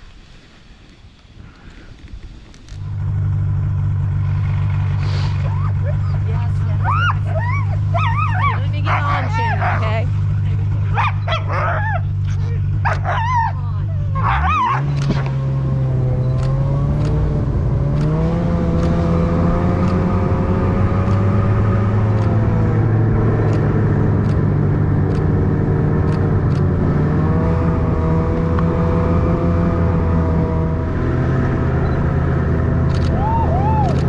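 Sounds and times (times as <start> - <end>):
vehicle engine running: 1.6 - 34.0
dog yelping: 6.8 - 10.1, 10.8 - 15.0.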